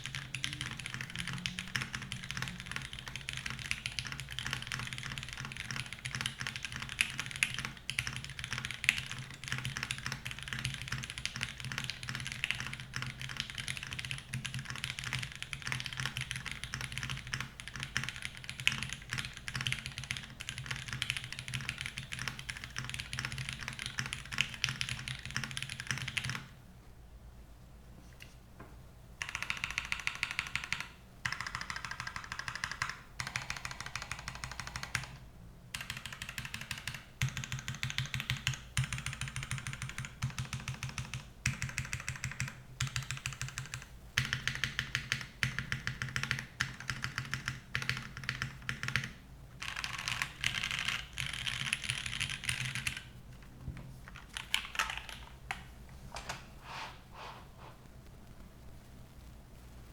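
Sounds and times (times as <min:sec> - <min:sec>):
mechanical keyboard typing: 0:00.0 - 0:26.5, 0:29.2 - 0:55.7.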